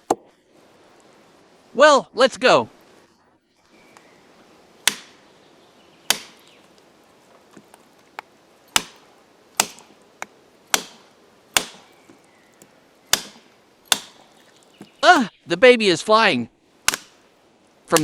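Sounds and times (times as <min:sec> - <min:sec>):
knife chopping into bone: 0:04.9 - 0:05.1, 0:06.1 - 0:06.4, 0:08.8 - 0:09.0, 0:10.7 - 0:11.0, 0:11.6 - 0:11.9, 0:13.1 - 0:14.2.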